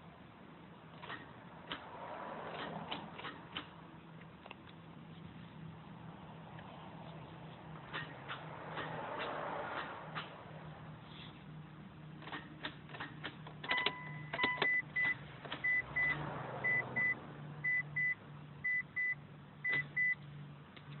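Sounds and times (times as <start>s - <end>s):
car warning chime beeps: 13.6s - 20.2s.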